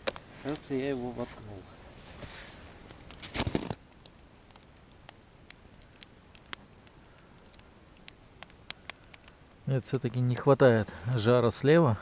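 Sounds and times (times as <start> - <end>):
campfire crackling and popping: 0.0 - 12.0
short rustle: 0.3 - 3.8.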